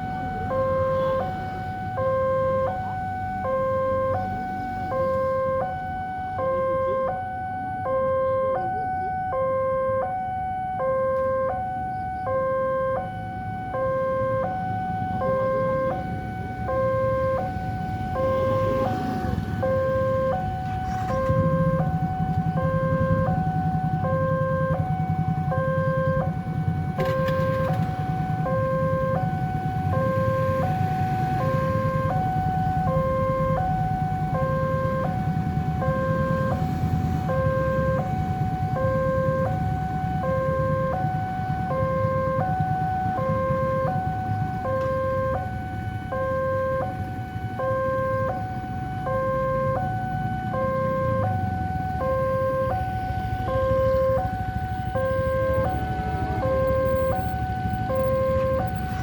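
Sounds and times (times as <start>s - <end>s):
two-tone crossing alarm: 0.0s - 59.0s.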